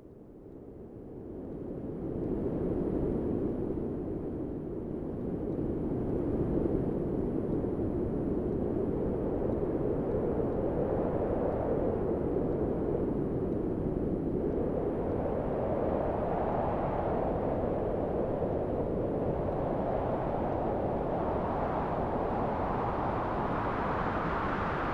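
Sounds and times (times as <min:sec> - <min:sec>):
strong wind gusting: 0:09.4 - 0:24.9.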